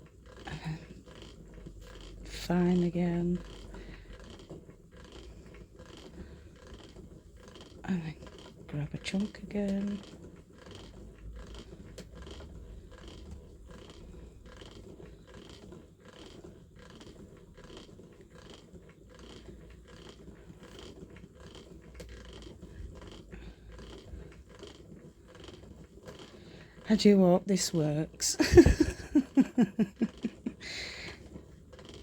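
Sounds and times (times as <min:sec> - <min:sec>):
spinning wheel ticking and creaking: 0:00.0 - 0:32.0.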